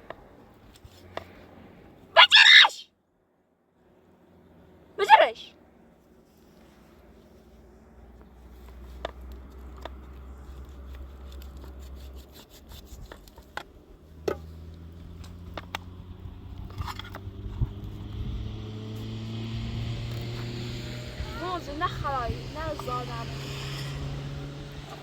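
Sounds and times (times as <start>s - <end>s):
engine running: 13.8s - 25.0s.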